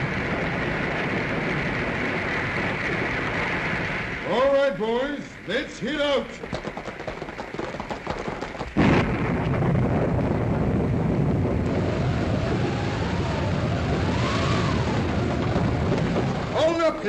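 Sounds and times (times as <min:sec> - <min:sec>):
loud thundering rumble: 0:00.0 - 0:17.0
rapid clicks: 0:05.9 - 0:09.1
faint rising and falling wail: 0:11.6 - 0:17.0.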